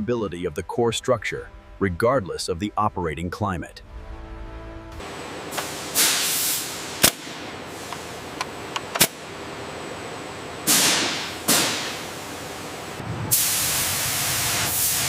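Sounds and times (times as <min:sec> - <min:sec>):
loud hissing bursts: 0:05.5 - 0:08.3, 0:10.7 - 0:15.0.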